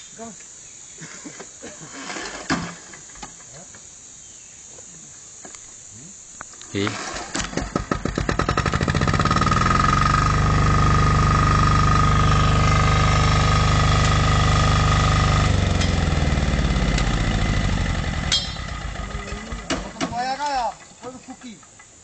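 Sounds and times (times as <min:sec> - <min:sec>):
engine running: 0:06.8 - 0:20.0
high whine: 0:08.4 - 0:20.4.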